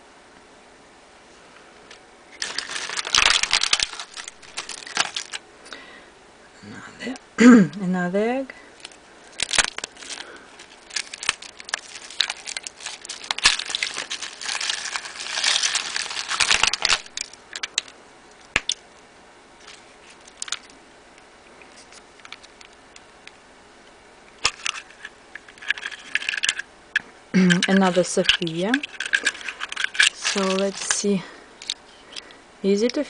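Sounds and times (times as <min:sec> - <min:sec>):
sharp clicks and crackles: 0:01.9 - 0:05.4, 0:08.8 - 0:18.8, 0:19.6 - 0:20.8
foil wrapper crinkling: 0:02.3 - 0:05.4, 0:08.8 - 0:18.8, 0:19.6 - 0:20.8, 0:24.4 - 0:26.6, 0:27.6 - 0:32.3.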